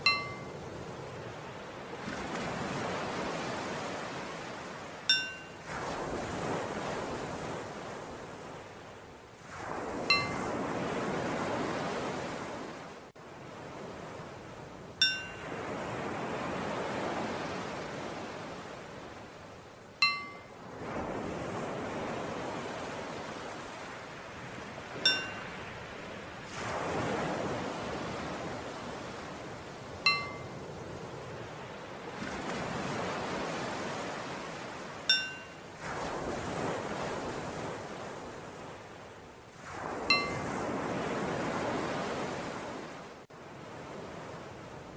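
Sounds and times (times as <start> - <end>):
bell ringing: 0.0 - 0.4, 5.1 - 5.6, 15.0 - 15.4, 20.0 - 20.5, 25.0 - 25.4, 30.1 - 30.5, 35.1 - 35.6
ocean waves washing: 0.0 - 44.9.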